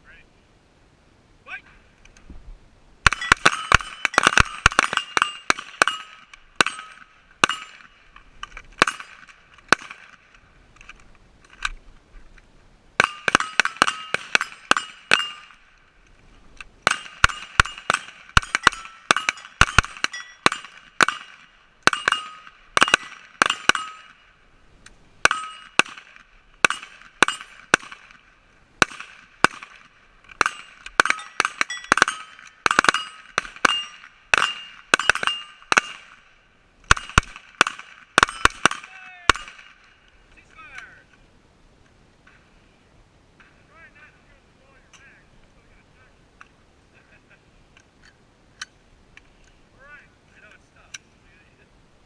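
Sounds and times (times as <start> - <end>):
sharp metallic clinks ringing: 3.1 - 8.0, 13.0 - 15.6, 16.9 - 21.2, 21.8 - 24.3, 25.2 - 25.8, 30.4 - 36.0, 38.2 - 39.6.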